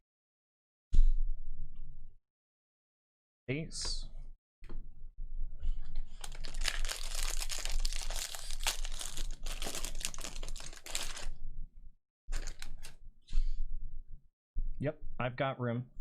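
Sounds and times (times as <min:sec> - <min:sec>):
foil wrapper crinkling and tearing: 0:06.1 - 0:11.3, 0:12.3 - 0:12.9.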